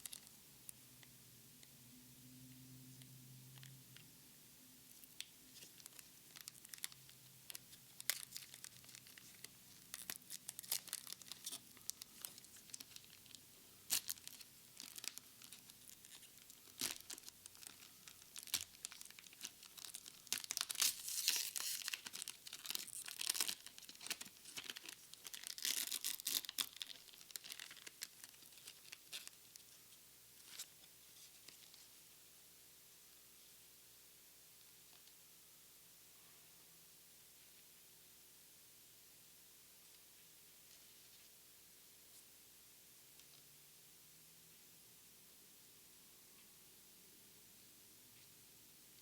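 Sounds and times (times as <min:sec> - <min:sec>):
plastic packaging tearing and crinkling: 0:05.5 - 0:29.7.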